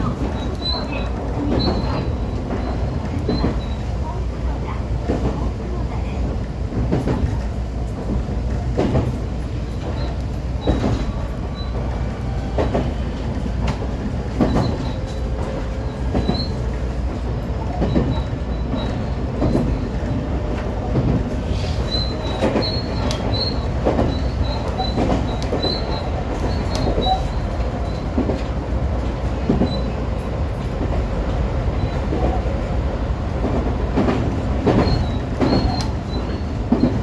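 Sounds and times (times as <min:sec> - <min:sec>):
train rumble: 0:00.0 - 0:37.0
wheels clacking over rail joints: 0:04.8 - 0:37.0
high wheel squeal: 0:21.4 - 0:28.0, 0:34.8 - 0:36.9.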